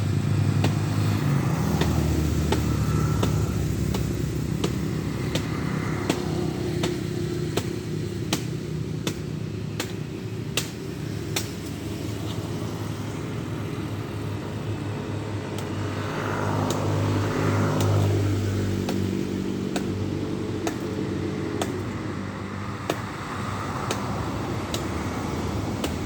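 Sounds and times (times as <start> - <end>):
diesel truck engine labouring: 0.0 - 26.0
vehicle approaching: 0.0 - 26.0
sharp regular ticks: 0.6 - 10.0, 15.5 - 22.0.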